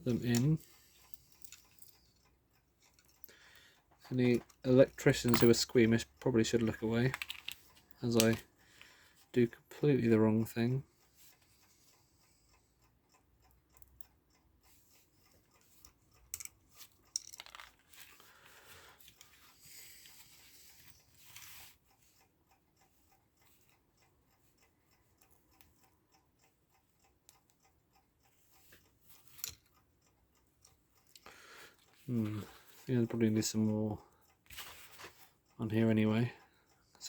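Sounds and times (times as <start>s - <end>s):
wire handling clicks and rustles: 0.0s - 9.8s, 15.5s - 21.8s.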